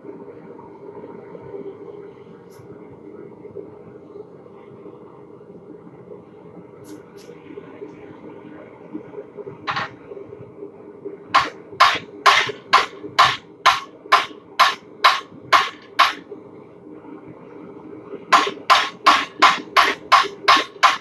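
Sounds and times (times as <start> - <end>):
hammer striking steel on anvil: 9.7 - 10.0, 11.4 - 16.2, 18.3 - 21.0
steady low hum: 11.4 - 16.4.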